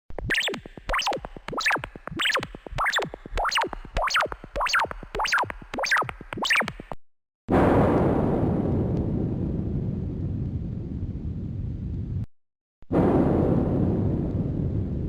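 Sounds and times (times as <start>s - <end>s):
electronic tone sweeping up and down: 0.1s - 7.0s.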